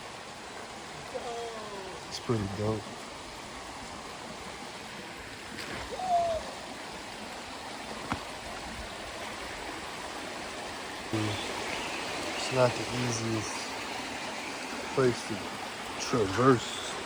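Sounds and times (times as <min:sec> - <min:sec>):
stream water flowing: 0:00.0 - 0:17.0.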